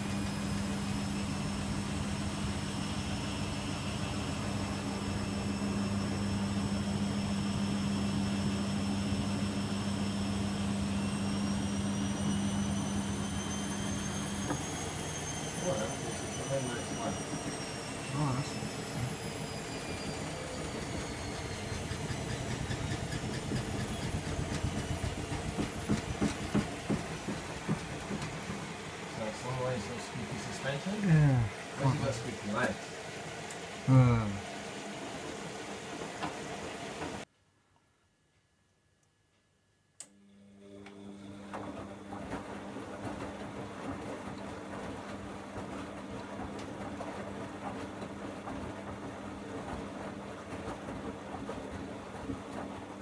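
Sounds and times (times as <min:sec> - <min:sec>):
washing machine running: 0:00.0 - 0:37.3, 0:40.0 - 0:53.0
soft irregular thuds: 0:23.0 - 0:28.6.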